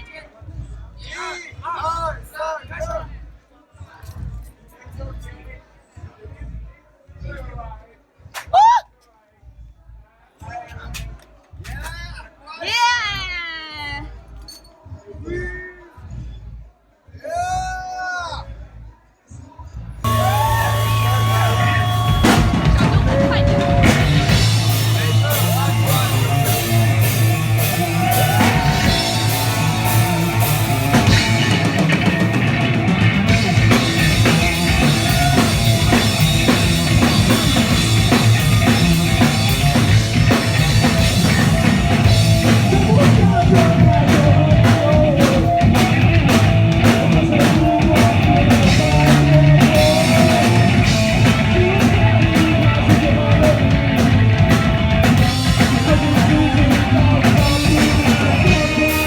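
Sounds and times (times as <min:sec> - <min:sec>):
shouted vocals: 0:08.4 - 0:08.9, 0:20.0 - 0:59.0
punk rock band playing live: 0:20.0 - 0:59.0.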